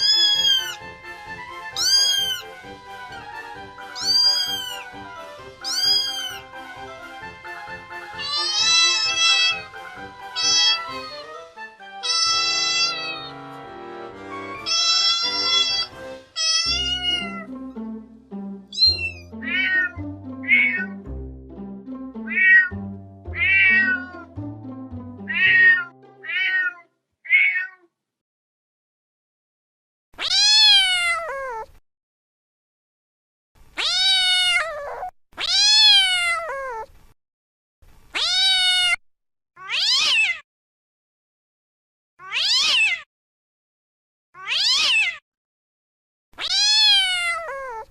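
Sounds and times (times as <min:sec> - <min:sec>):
cat meowing: 0:00.0 - 0:00.8, 0:01.8 - 0:02.5, 0:03.9 - 0:04.9, 0:05.6 - 0:06.4, 0:08.2 - 0:09.7, 0:10.4 - 0:11.0, 0:12.0 - 0:13.3, 0:14.6 - 0:17.5, 0:18.7 - 0:21.0, 0:22.3 - 0:24.3, 0:25.3 - 0:27.9, 0:30.2 - 0:31.8, 0:33.8 - 0:36.9, 0:38.1 - 0:39.0, 0:39.6 - 0:40.4, 0:42.2 - 0:43.1, 0:44.4 - 0:45.2, 0:46.4 - 0:47.9
background music: 0:00.0 - 0:26.6.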